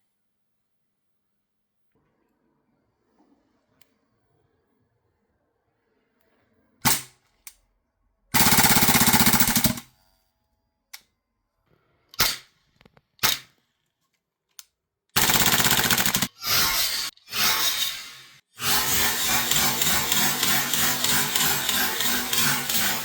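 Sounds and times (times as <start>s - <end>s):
airsoft gun firing: 6.8s - 7.1s, 8.4s - 9.8s, 15.2s - 16.3s.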